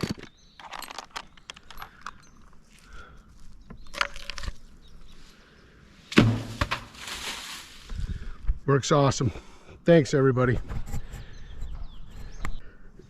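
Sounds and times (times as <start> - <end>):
climbing gear clicking and clinking: 0.0 - 2.9
branches rustling: 2.6 - 8.5
dull thump: 6.1 - 7.2.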